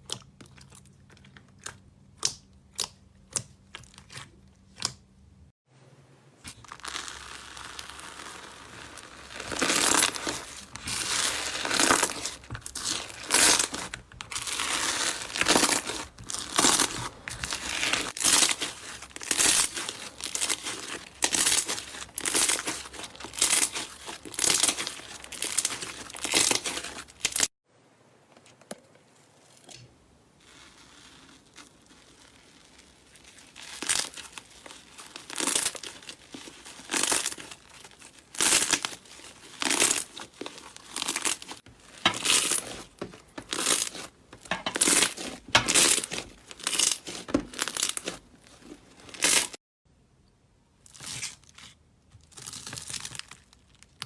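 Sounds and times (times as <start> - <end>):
slime squishing by hand: 0.0 - 5.4, 6.5 - 27.5, 29.1 - 49.6.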